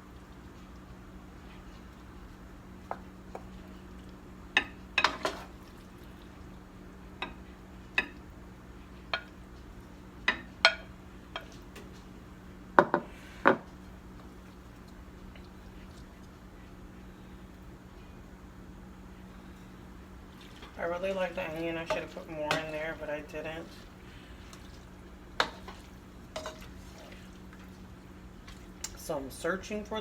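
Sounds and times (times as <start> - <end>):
utensil clinking on a pan and plate: 20.6 - 23.8, 25.4 - 27.6.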